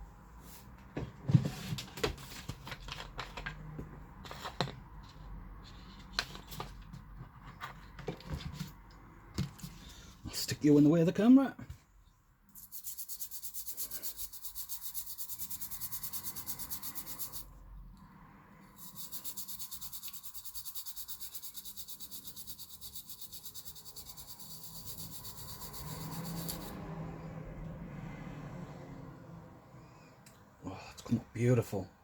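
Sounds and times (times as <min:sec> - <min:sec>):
toothbrush scrubbing circuit board: 0:12.6 - 0:17.5, 0:18.8 - 0:26.8.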